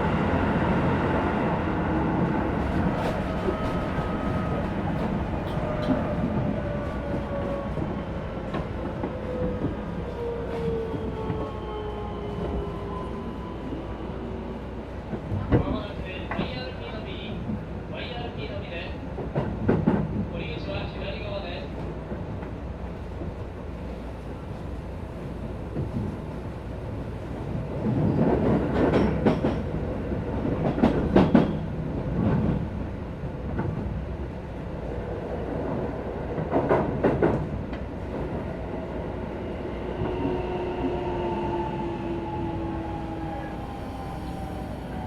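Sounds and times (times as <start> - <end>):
clickety-clack over rail joints: 2.5 - 11.6, 15.0 - 23.5, 25.4 - 38.9.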